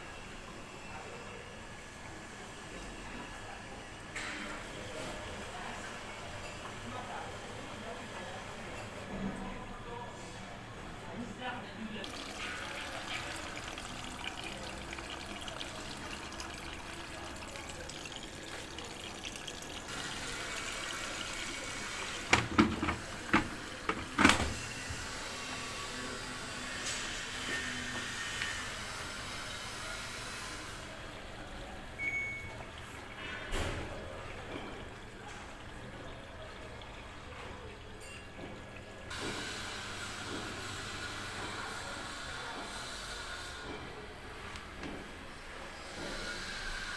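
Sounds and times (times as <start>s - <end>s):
water running into washing machine: 12.0s - 41.7s.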